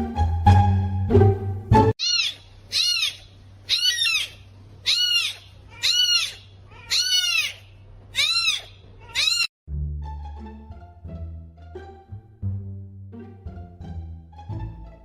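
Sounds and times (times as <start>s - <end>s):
animal high-pitched calls: 2.0s - 9.5s.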